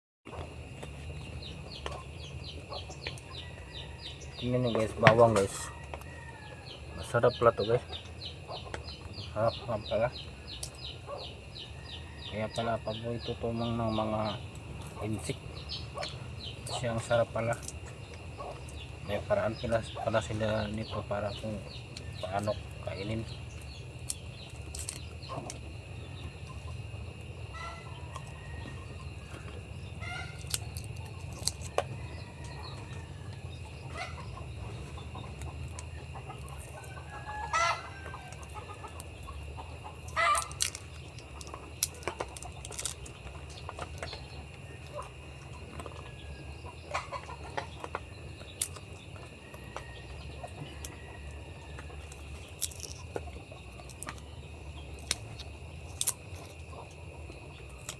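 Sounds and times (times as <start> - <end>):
chickens clucking: 0.3 - 57.9
steady low hum: 0.3 - 57.9
sharp clicks and crunches: 16.0 - 25.6, 28.1 - 37.0, 38.0 - 46.1, 46.9 - 49.9, 51.6 - 57.9.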